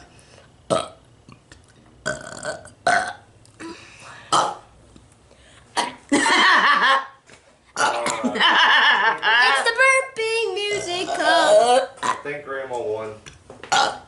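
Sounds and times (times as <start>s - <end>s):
forced burps: 0.7s - 1.0s, 2.0s - 4.7s, 5.7s - 6.0s, 7.8s - 8.4s, 10.7s - 12.4s, 13.7s - 14.0s.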